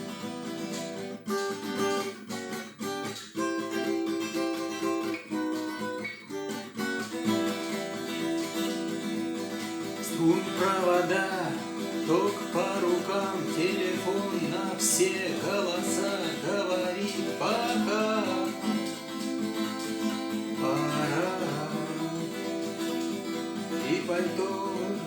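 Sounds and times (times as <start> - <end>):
acoustic guitar strumming: 0.0 - 25.0
person singing: 9.8 - 25.0.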